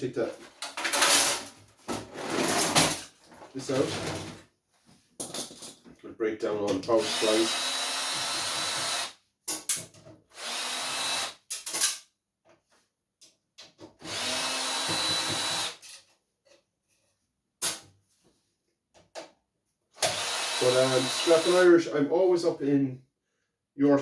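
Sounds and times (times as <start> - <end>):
metal parts clicking and rattling: 0.6 - 1.5
power drill whine: 7.0 - 9.1, 10.4 - 11.4, 14.0 - 15.8, 20.0 - 21.7.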